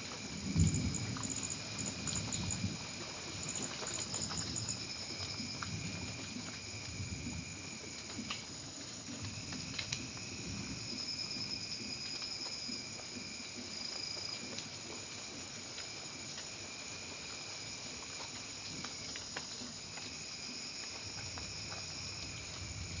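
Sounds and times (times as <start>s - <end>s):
rain pattering: 0.0s - 23.0s.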